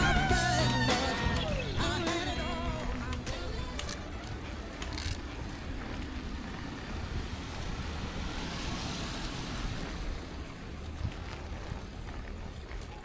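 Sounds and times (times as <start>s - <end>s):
wind noise on microphone: 0.0s - 13.0s
sharp clicks: 0.6s - 5.6s.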